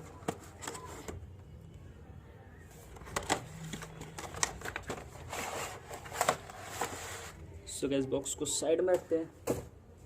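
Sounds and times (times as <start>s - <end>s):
packaging clicks and rustling: 2.9s - 7.2s.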